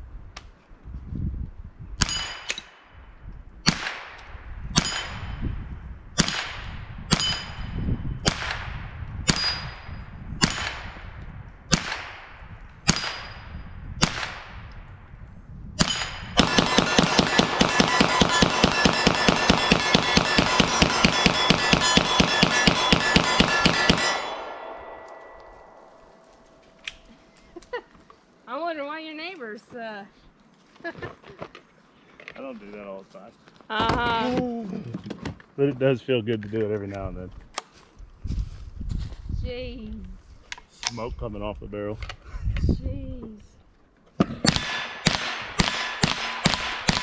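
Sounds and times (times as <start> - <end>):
steel target ringing ping: 2.0 - 2.9, 15.8 - 27.3
gunshots: 3.6 - 5.4, 6.2 - 11.1, 11.7 - 14.7, 15.8 - 26.8, 44.2 - 47.0
rapid string of gunshots: 11.7 - 13.4, 14.0 - 14.6, 15.8 - 24.8, 44.4 - 47.0.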